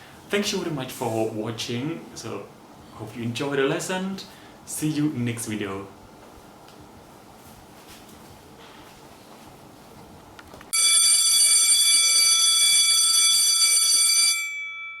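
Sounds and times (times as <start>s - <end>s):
bell-like chime tone: 10.8s - 15.0s.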